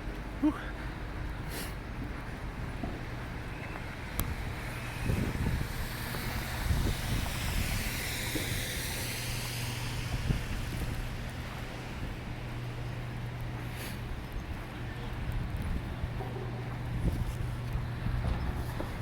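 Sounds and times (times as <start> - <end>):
traffic engine hum: 0.0 - 19.0
vehicle tyre hiss: 1.4 - 1.8, 3.8 - 12.8, 13.6 - 14.1.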